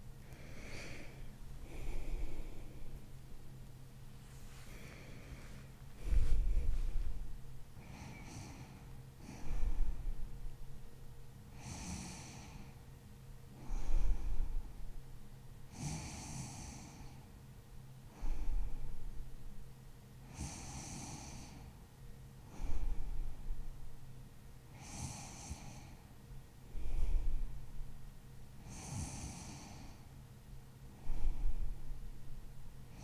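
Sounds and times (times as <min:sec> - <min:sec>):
woman snoring softly: 0:00.2 - 0:03.0, 0:07.8 - 0:10.1, 0:11.5 - 0:12.8, 0:13.6 - 0:14.8, 0:15.7 - 0:17.3, 0:20.2 - 0:21.8, 0:22.4 - 0:23.4, 0:24.7 - 0:27.4, 0:28.6 - 0:30.1, 0:31.0 - 0:31.8
soft airy breath: 0:00.2 - 0:17.4, 0:18.0 - 0:24.0, 0:24.6 - 0:28.0, 0:28.6 - 0:33.0.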